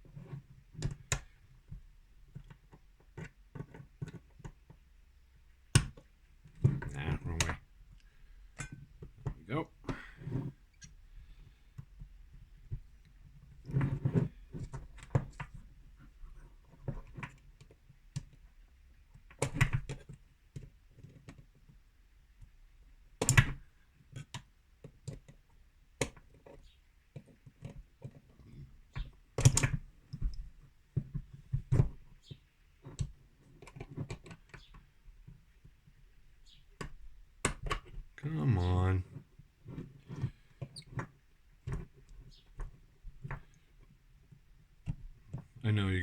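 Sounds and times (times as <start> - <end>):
clicks and taps on metal lock: 19.2 - 21.4, 23.2 - 23.6, 28.9 - 30.4.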